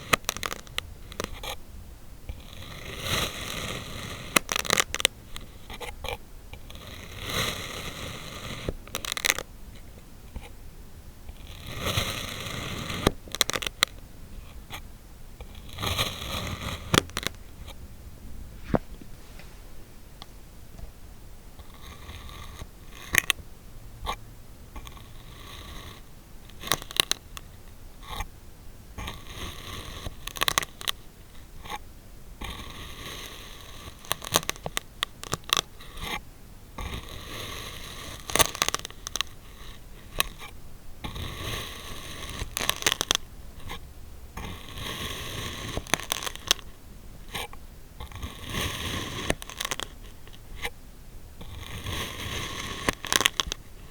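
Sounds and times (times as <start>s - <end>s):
sand being cut and crunched: 41.1s - 43.2s, 44.4s - 46.6s, 51.4s - 53.6s.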